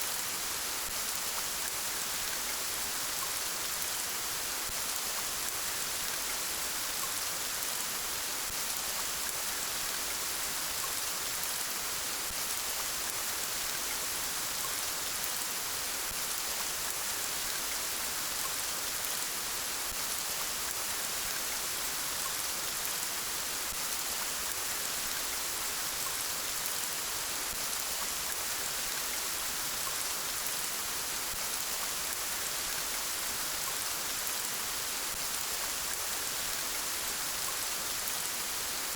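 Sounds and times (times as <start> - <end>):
rain falling: 0.1 - 38.9.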